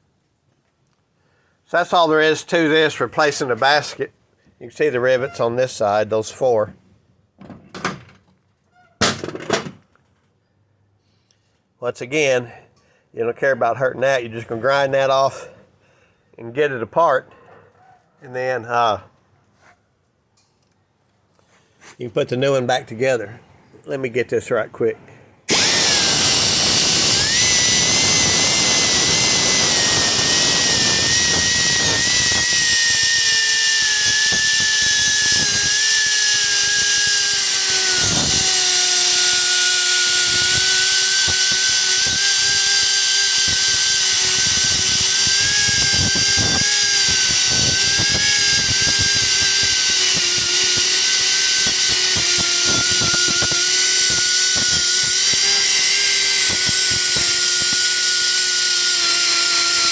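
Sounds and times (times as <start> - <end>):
die grinder grinding metal: 25.5 - 59.9.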